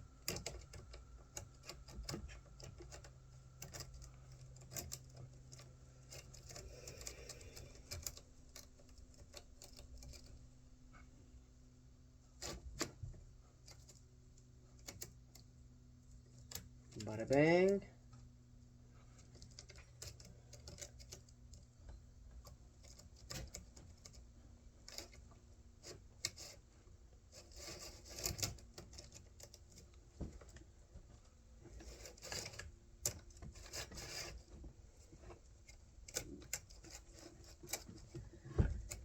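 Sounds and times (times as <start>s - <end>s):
light clicks and knocks: 27.4s - 39.0s.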